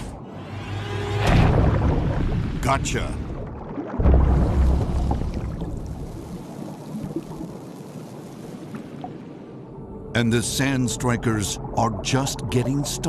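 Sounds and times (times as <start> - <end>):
deep underwater boom: 1.2 - 6.3.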